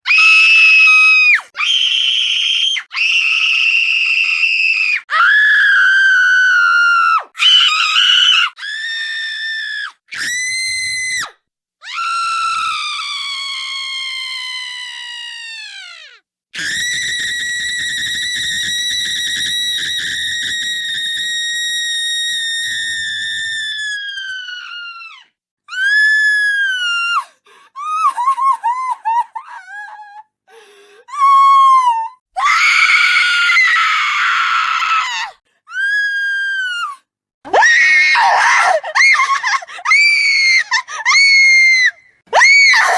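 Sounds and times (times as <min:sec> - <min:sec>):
girl screaming: 0:00.1 - 0:21.3, 0:22.6 - 0:27.2, 0:39.9 - 0:42.9.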